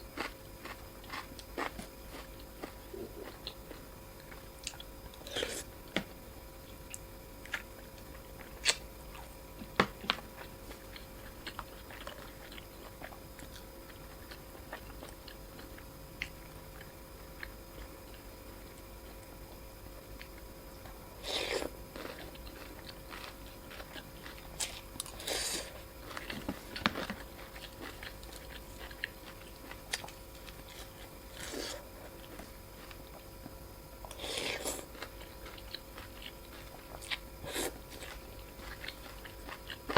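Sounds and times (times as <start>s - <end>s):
person chewing noodles: 0.0s - 5.8s, 6.6s - 39.9s.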